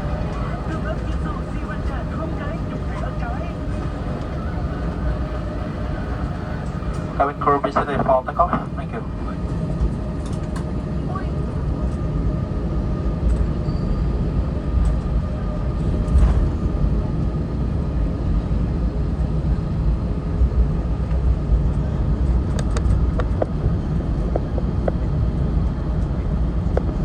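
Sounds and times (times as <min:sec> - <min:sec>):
faint steady whine: 0:00.0 - 0:10.3
wheels on runway: 0:00.0 - 0:10.7
jet engines rumbling: 0:00.0 - 0:13.1.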